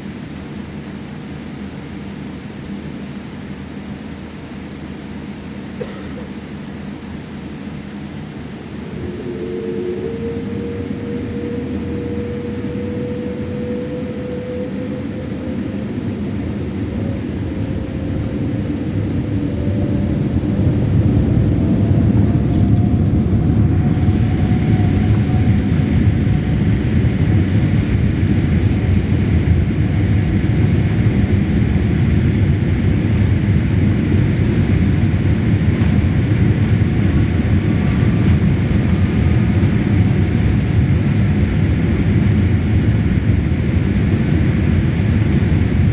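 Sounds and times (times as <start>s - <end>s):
jet engines spooling up: 6.8s - 45.9s.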